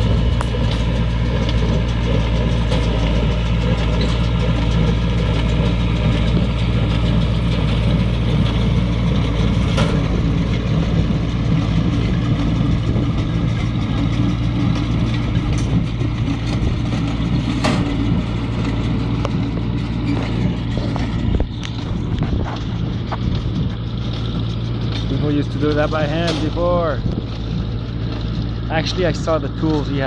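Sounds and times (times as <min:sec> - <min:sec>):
engine running steadily: 0:00.0 - 0:30.0.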